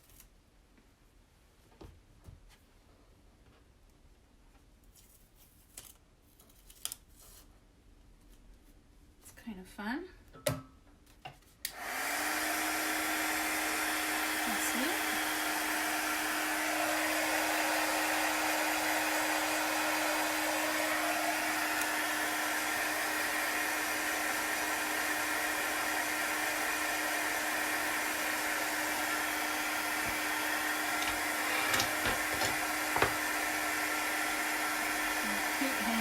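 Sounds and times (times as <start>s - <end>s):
hot-air dryer humming: 11.6s - 36.0s.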